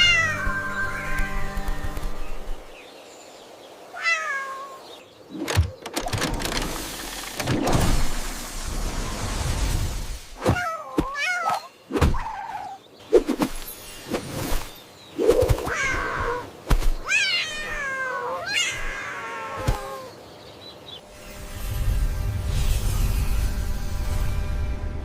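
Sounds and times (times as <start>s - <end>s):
cat meowing: 4.0s - 4.8s.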